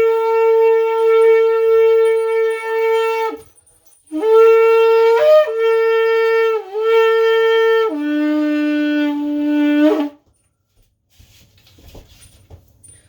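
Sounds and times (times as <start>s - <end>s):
horn blown like a shofar: 0.0s - 10.2s.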